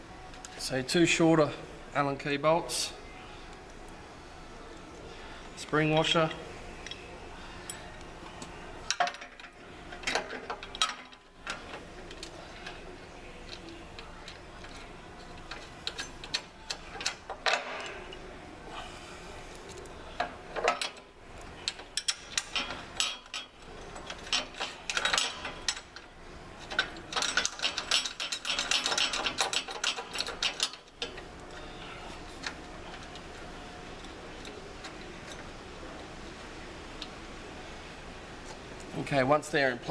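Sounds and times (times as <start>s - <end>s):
metal bolts clicking: 19.8s - 31.7s.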